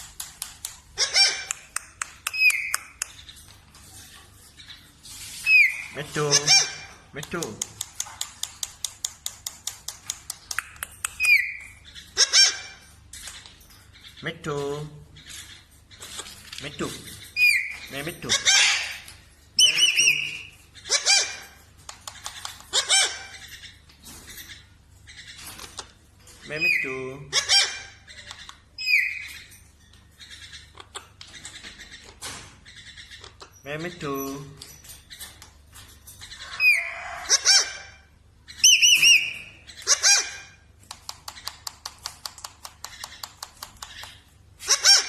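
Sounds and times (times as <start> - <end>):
small clicks: 0.0 - 3.6, 7.2 - 11.7, 21.8 - 22.7, 40.8 - 44.3
parrot squawks: 1.0 - 2.8, 5.4 - 7.0, 11.2 - 12.9, 17.4 - 21.6, 22.6 - 23.7, 26.7 - 29.3, 36.4 - 40.7, 44.6 - 45.0.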